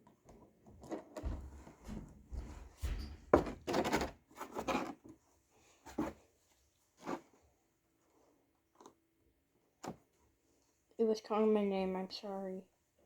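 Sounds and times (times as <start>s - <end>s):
handling knocks and rustles: 0.3s - 5.0s.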